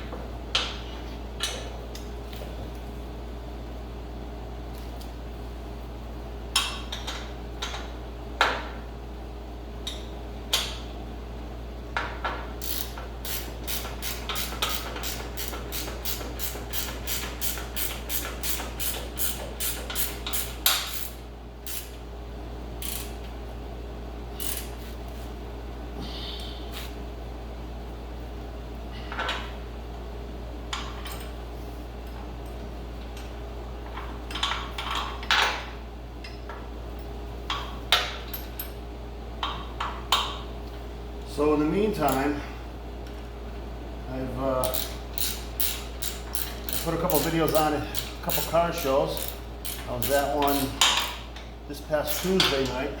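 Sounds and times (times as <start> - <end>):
steady low hum: 0.0 - 53.0
hand tools clicking and clanking: 12.6 - 21.9, 44.6 - 52.8
ratchet wrench clicking: 12.6 - 22.0, 22.8 - 23.1, 24.4 - 24.7, 44.6 - 51.2.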